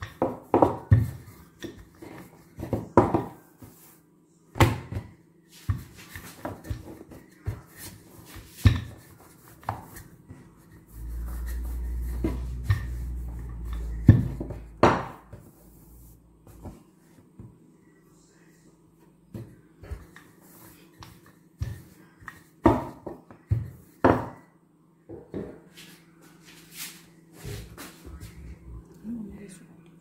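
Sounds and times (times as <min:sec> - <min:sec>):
steady low hum: 0:07.2 - 0:22.6, 0:25.7 - 0:30.0.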